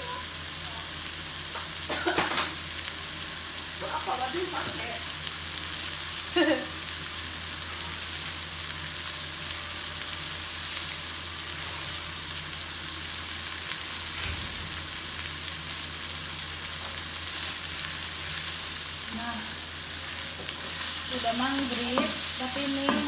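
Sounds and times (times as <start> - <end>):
food sizzling in oil: 0.0 - 23.0
low thud: 14.2 - 14.7.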